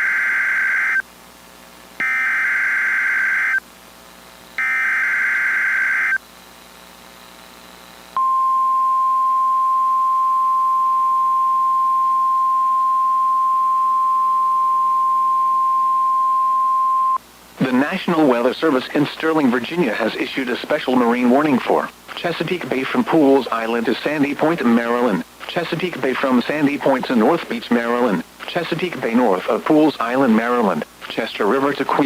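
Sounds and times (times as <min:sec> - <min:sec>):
buzzy digital data tone bursts: 0:02.0 - 0:03.6, 0:04.6 - 0:06.2
steady single-pitch alert tone: 0:04.6 - 0:06.2, 0:08.2 - 0:17.2.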